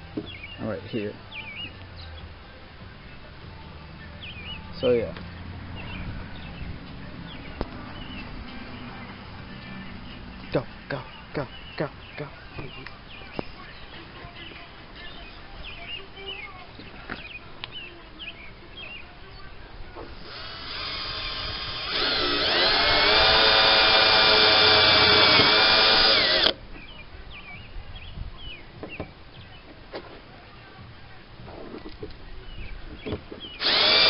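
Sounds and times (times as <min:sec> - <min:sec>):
cordless drill boring: 0:20.2 - 0:26.6, 0:33.6 - 0:34.0.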